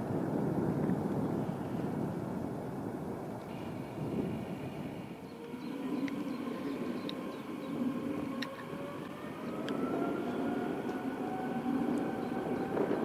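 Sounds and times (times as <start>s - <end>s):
jet engines whining: 3.5s - 13.0s.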